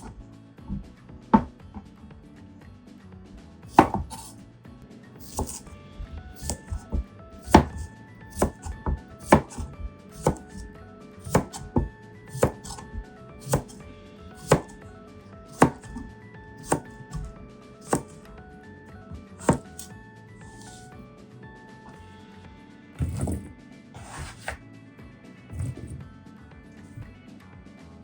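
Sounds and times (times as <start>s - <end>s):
knife cutting on a cutting board: 0.0s - 0.8s, 3.7s - 4.4s, 5.2s - 13.8s, 14.4s - 14.8s, 15.5s - 18.3s, 19.4s - 20.9s, 23.0s - 24.6s, 25.5s - 26.0s.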